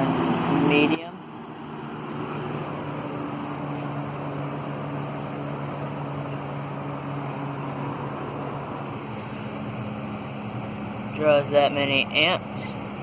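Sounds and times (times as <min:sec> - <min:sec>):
low motor hum: 0:00.0 - 0:13.0.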